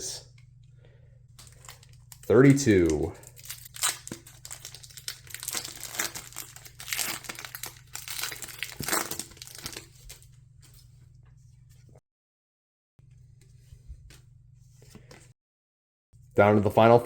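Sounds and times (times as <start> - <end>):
faint hum: 0.0 - 12.0
foil wrapper tearing and crinkling: 1.4 - 10.2.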